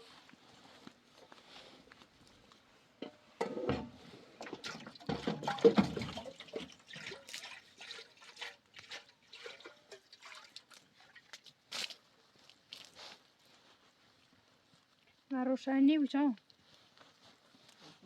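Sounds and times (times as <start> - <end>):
small knocks and clatters: 3.0 - 10.2
water splashing and sloshing: 3.4 - 13.0.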